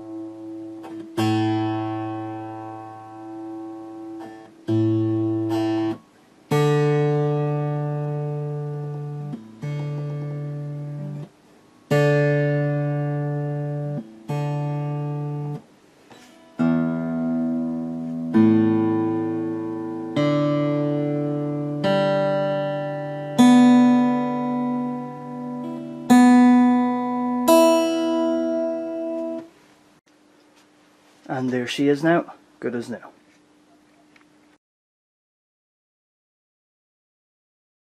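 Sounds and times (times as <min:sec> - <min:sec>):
acoustic guitar strummed chords: 0:00.0 - 0:29.6.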